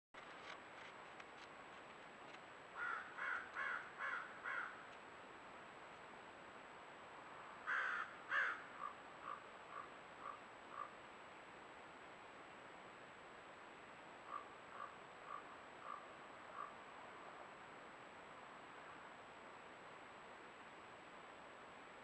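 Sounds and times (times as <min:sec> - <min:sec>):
bird cawing: 0:02.8 - 0:04.9, 0:07.6 - 0:10.9.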